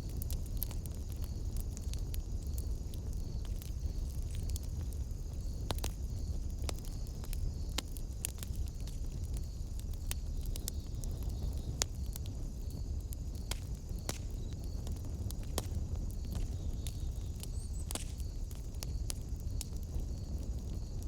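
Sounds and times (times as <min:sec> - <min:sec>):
low rumble of flames: 0:00.0 - 0:21.0
wood fire crackling: 0:00.0 - 0:21.0.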